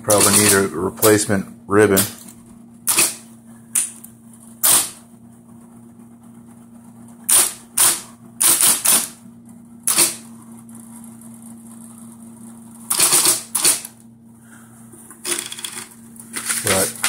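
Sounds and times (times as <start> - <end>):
typewriter motor humming: 0.0 - 1.2, 1.8 - 4.0, 4.6 - 5.0, 7.2 - 9.2, 9.8 - 12.0, 12.8 - 14.0, 15.2 - 17.0.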